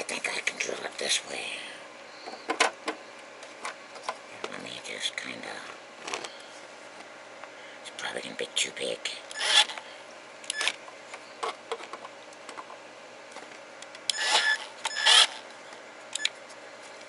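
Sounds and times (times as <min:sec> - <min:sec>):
power drill motor whining: 0:09.3 - 0:09.8, 0:14.1 - 0:15.4.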